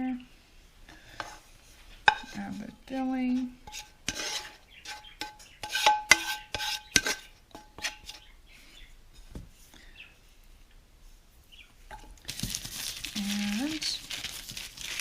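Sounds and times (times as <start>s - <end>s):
utensil clinking against a dish: 3.6s - 8.2s.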